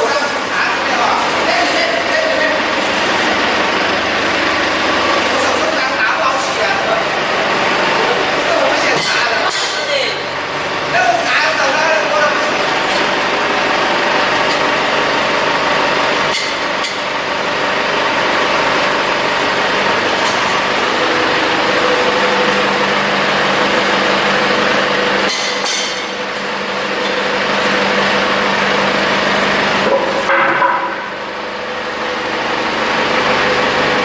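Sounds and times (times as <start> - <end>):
diesel generator engine running: 0.0 - 34.0.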